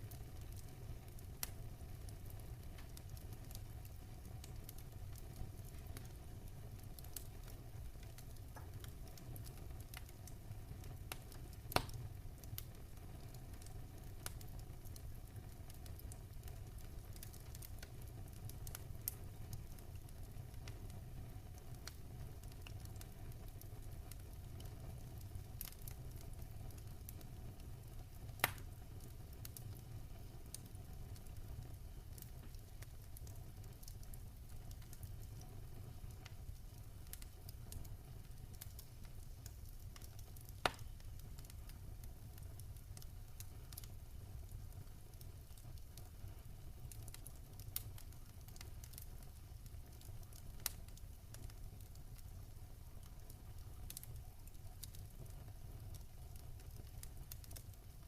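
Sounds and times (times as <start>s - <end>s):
low rumble of flames: 0.0s - 58.0s
wood fire crackling: 0.0s - 58.0s
burning wood popping: 28.4s - 31.4s, 32.0s - 46.1s.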